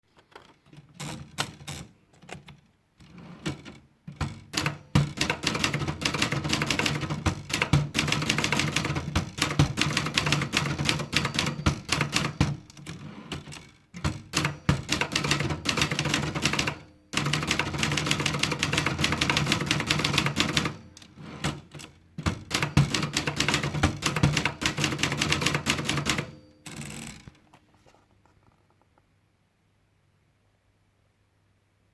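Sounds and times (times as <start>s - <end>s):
typewriter key strikes: 3.5s - 27.0s.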